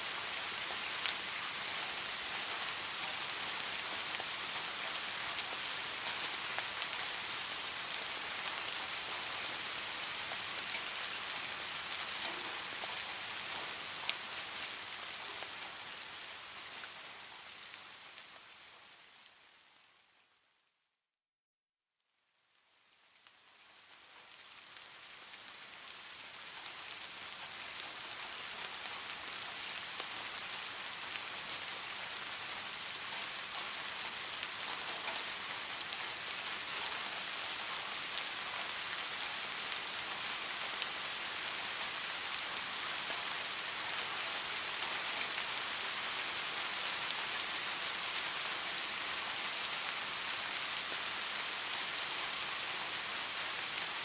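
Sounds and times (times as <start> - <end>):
steady rain falling: 0.0 - 20.8, 22.2 - 54.0.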